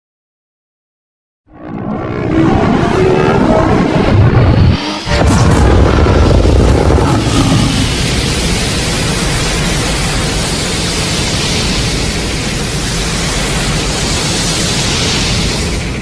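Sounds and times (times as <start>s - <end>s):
loud rushing hiss: 4.3s - 16.0s.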